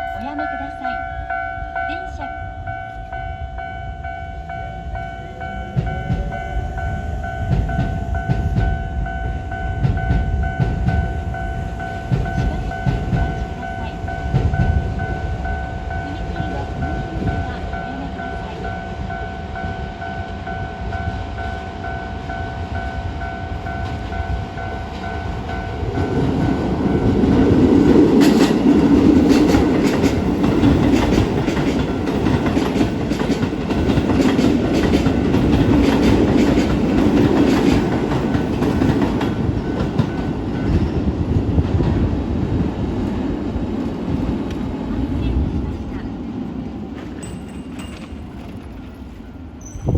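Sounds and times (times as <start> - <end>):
level crossing bell ringing: 0.0 - 10.3
electric train rumbling past: 0.0 - 49.9
train wheels clacking on rail joints: 5.7 - 19.7, 23.5 - 49.9.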